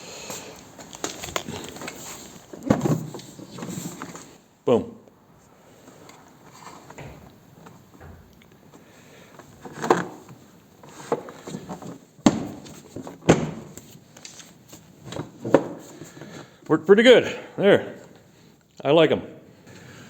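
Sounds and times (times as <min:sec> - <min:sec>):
latch clicks and lid knocks: 0:06.9 - 0:08.8.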